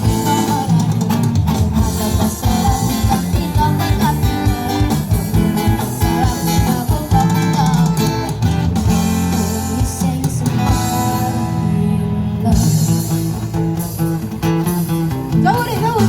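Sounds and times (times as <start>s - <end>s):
person singing: 0.0s - 8.3s, 8.9s - 13.6s
drum beat: 0.0s - 11.3s
guitar: 0.0s - 16.0s.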